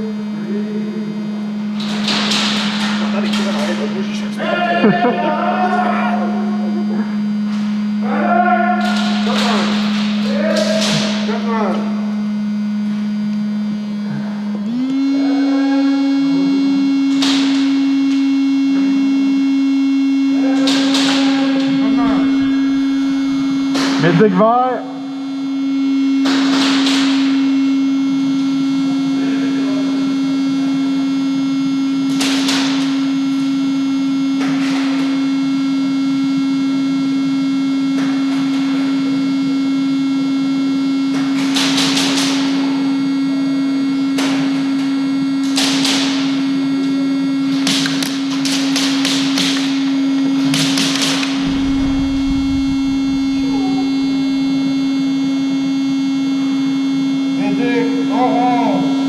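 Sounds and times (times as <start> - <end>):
small fan buzzing: 0.0 - 59.0
short noisy bursts: 50.9 - 56.3.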